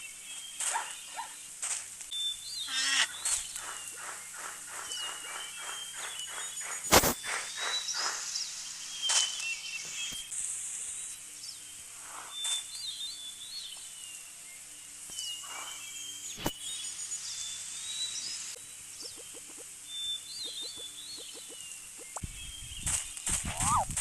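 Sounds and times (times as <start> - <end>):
bird chirps and whistles: 19.0 - 23.9.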